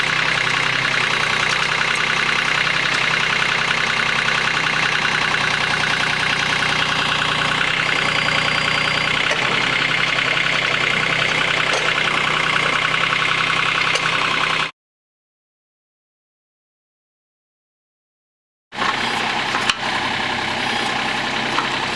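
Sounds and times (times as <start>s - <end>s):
tractor diesel engine under load: 0.0s - 14.7s, 18.8s - 21.9s.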